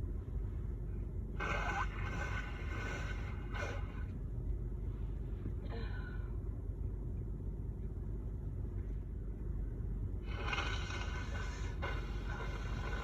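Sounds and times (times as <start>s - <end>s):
steady low rumble: 0.0s - 13.0s
breathy intake sound: 1.4s - 4.1s, 10.3s - 13.0s.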